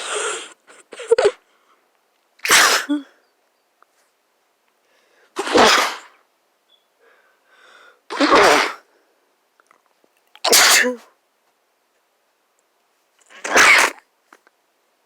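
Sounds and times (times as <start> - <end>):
person sneezing: 2.4 - 3.2, 5.4 - 6.2, 8.1 - 8.8, 10.4 - 11.1, 13.3 - 14.0.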